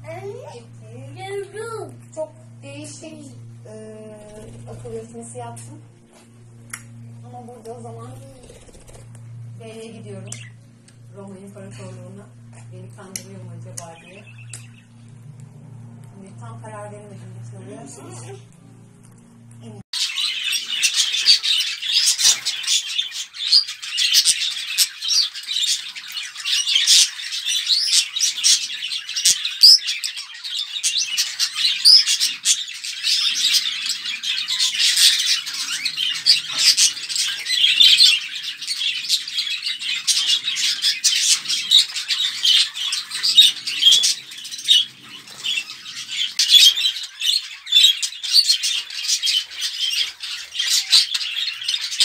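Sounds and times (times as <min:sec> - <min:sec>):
budgerigars chattering: 0:20.0 - 0:52.0.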